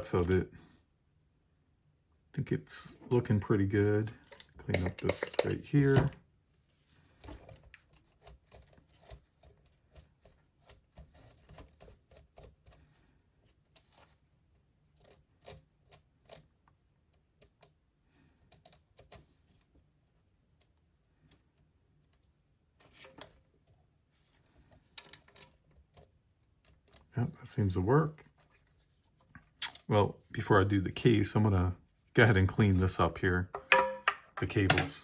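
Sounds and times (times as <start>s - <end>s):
plastic and metal parts clicking: 4.1s - 6.2s.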